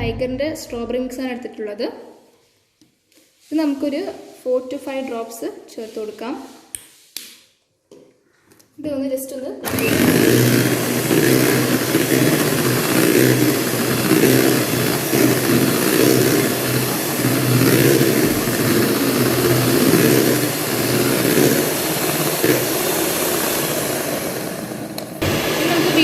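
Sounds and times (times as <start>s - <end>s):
electric hand mixer whirring: 9.6s - 26.0s.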